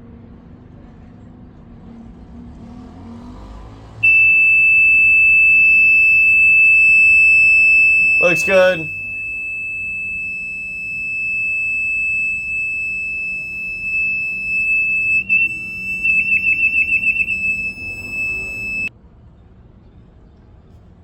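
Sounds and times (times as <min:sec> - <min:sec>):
high-pitched alarm tone: 0:04.0 - 0:18.9.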